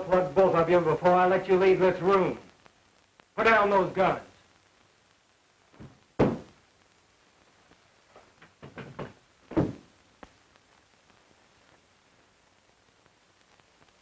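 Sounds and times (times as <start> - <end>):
knocks and thumps: 5.8 - 6.6, 8.4 - 9.9.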